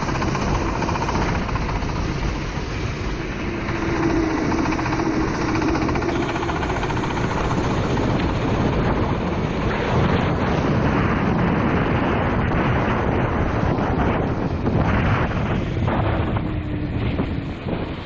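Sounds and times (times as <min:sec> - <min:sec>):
kart engine running: 0:00.0 - 0:09.9
wind rushing on microphone: 0:00.0 - 0:18.0.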